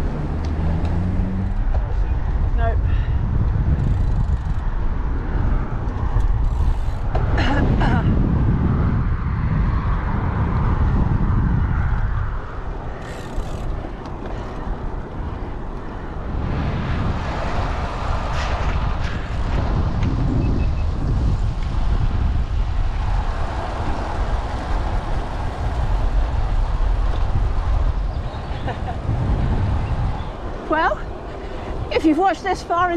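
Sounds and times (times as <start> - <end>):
road noise: 0.0 - 32.9
wind buffeting microphone: 0.0 - 32.9.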